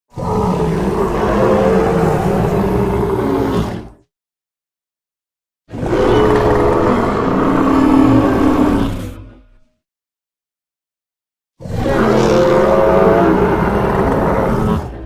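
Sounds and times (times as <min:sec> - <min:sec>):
dinosaur roar: 0:00.1 - 0:04.0, 0:05.7 - 0:09.8, 0:11.6 - 0:15.0.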